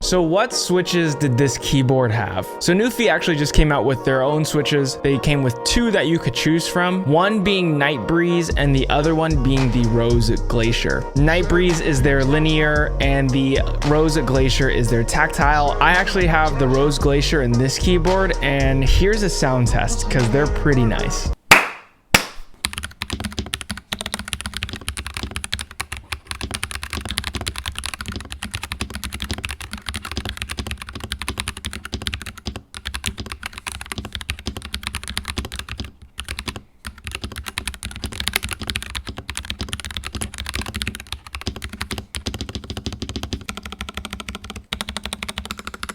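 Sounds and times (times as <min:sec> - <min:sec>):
mechanical keyboard typing: 0:22.6 - 0:45.9.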